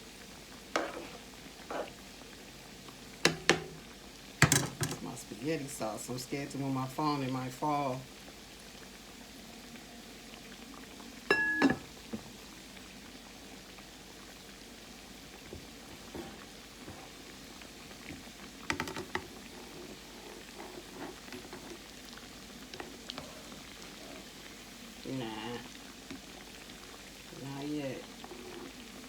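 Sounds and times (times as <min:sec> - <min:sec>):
food sizzling in a pan: 0:00.0 - 0:29.0.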